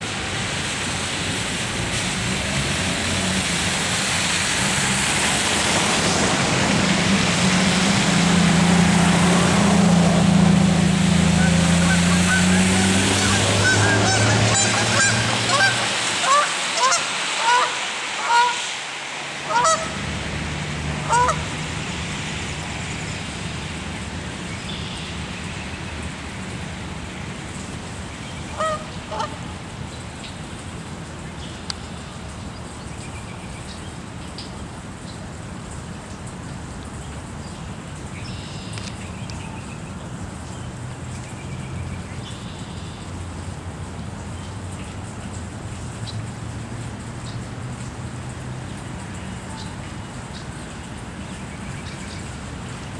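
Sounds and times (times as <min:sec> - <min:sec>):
low engine hum: 0:00.0 - 0:52.9
rain hissing: 0:00.0 - 0:52.9
geese honking: 0:11.0 - 0:18.6, 0:19.4 - 0:20.1, 0:21.0 - 0:21.8, 0:28.5 - 0:29.6.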